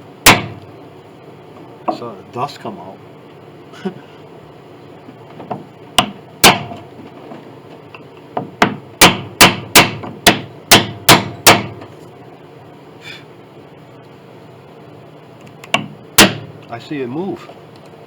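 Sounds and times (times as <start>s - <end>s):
hammer blows on wood: 8.4s - 11.9s.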